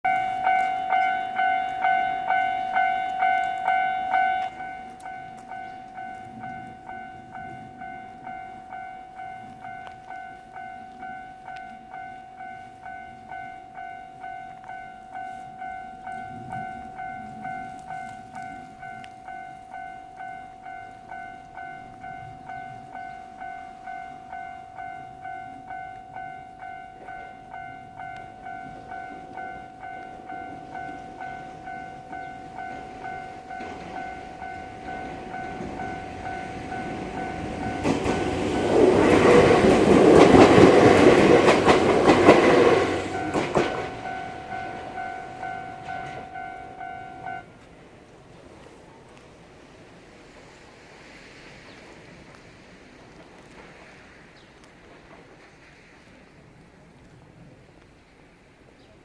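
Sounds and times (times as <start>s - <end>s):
level crossing warning bell: 0.0s - 48.0s
train clattering over rail joints: 14.6s - 56.4s.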